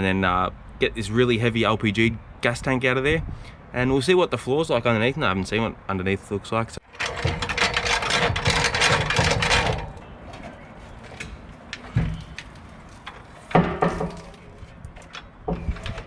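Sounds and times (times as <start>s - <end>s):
clicks and knocks: 6.8s - 16.0s
jack clicking and rattling: 6.8s - 16.0s.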